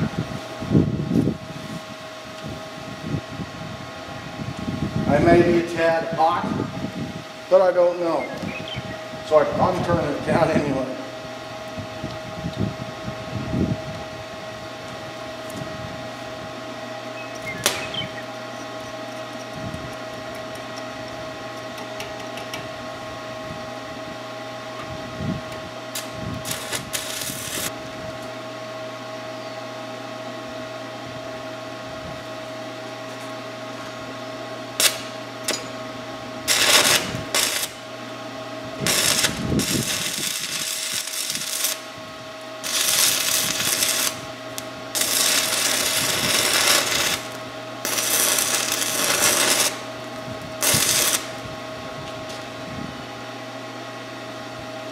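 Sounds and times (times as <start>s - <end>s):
welder humming: 0.0s - 31.6s, 32.2s - 52.8s
crackling hissing welding arc: 17.4s - 18.2s, 25.9s - 27.7s, 34.7s - 35.7s, 36.4s - 37.8s, 38.8s - 51.4s.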